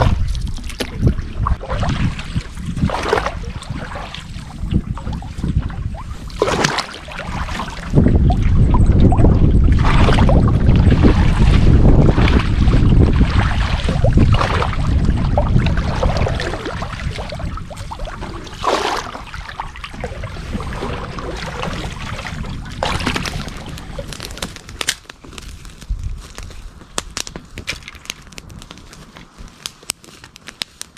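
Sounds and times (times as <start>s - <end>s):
water rushing: 0.0s - 25.0s
wind buffeting microphone: 0.0s - 30.0s.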